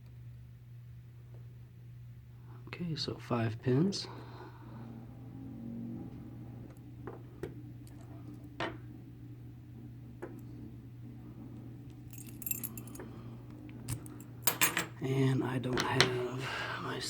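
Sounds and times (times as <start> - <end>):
steady low hum: 0.0 - 17.0
keys jingling: 12.0 - 13.0, 13.9 - 14.9.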